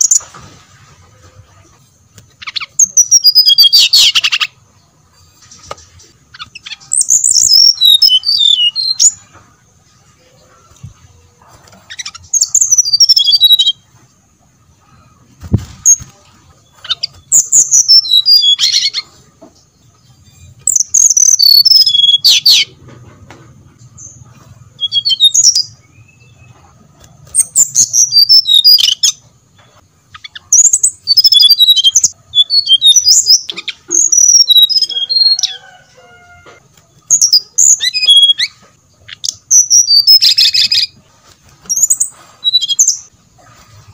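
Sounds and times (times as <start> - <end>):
bird song whistled warbling: 2.4 - 4.6, 6.0 - 9.2, 11.9 - 13.8, 16.7 - 19.2, 20.2 - 22.8, 24.0 - 29.2, 30.1 - 35.8, 37.0 - 41.0, 41.6 - 43.1.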